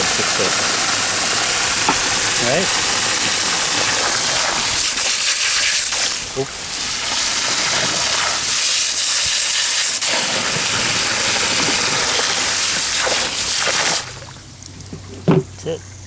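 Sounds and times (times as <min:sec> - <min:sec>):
hose spray hissing: 0:00.0 - 0:14.3.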